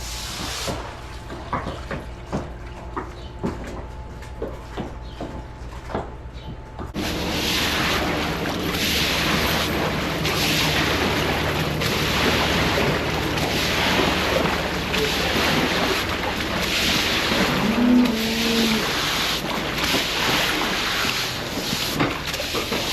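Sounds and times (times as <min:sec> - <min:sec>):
water rushing: 0:07.0 - 0:21.6
cow mooing: 0:17.5 - 0:19.0.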